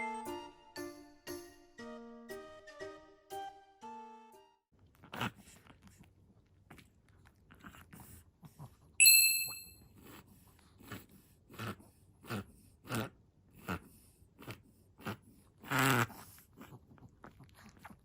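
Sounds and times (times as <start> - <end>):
electronic chime: 9.0 - 9.7.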